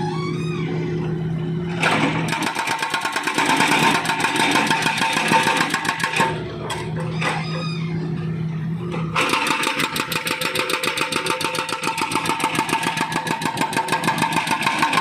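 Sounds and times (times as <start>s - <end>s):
diesel engine running: 0.0s - 15.0s
hydraulic breaker hammering asphalt: 1.8s - 6.7s, 9.1s - 15.0s.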